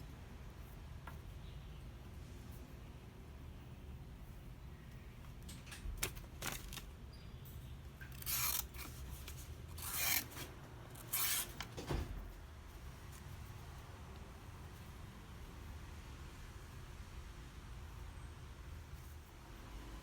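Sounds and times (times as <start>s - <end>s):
knife blade scraping: 8.0s - 11.7s.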